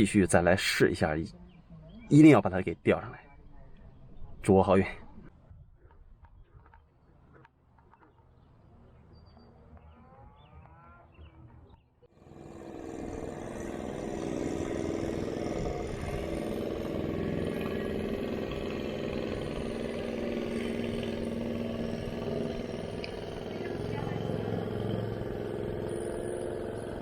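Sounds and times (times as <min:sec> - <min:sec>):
motorboat engine running: 0:12.1 - 0:27.0.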